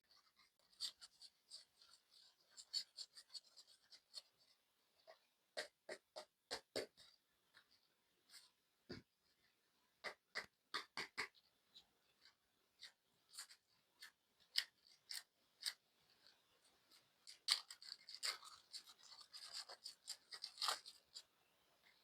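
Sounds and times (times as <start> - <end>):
packaging clicking and crinkling: 17.2 - 21.2.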